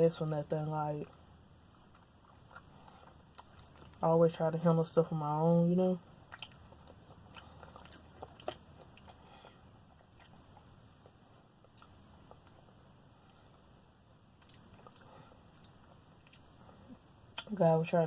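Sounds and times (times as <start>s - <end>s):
low room hum: 0.0s - 18.0s
chewing mouth clicks and smacks: 1.9s - 4.0s, 6.3s - 12.6s, 14.4s - 16.5s.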